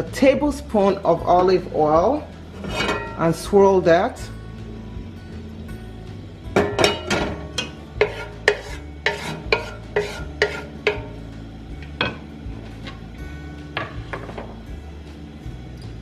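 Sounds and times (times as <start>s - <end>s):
sharp ringing kitchen knocks: 6.5s - 7.8s.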